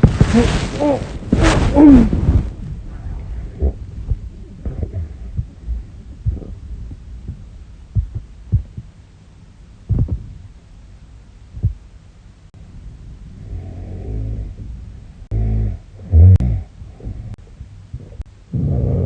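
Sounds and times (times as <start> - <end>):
soft low thuds: 0.0 - 12.1.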